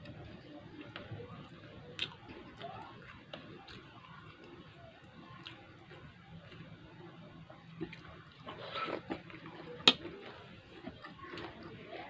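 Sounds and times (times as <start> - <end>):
wet chewing and slurping: 7.6 - 12.0.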